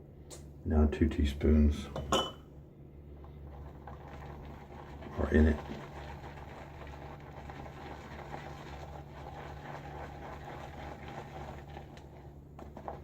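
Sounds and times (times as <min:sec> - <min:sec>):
shaving brush swishing in cream: 0:05.0 - 0:13.0.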